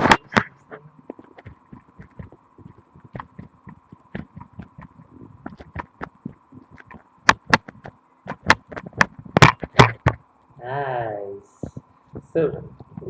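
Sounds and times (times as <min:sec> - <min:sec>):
knocks and clicks through bone: 0:01.1 - 0:10.2
louder thumps: 0:01.1 - 0:10.2.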